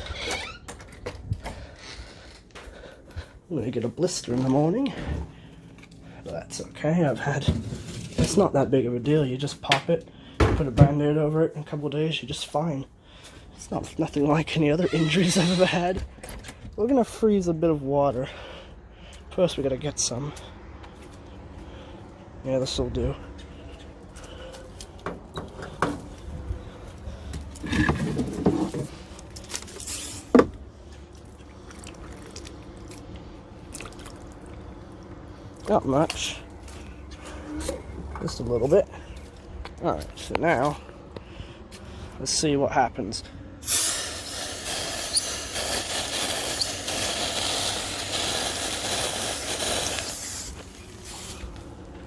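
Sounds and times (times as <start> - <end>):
freeze spray hissing: 43.6 - 51.5.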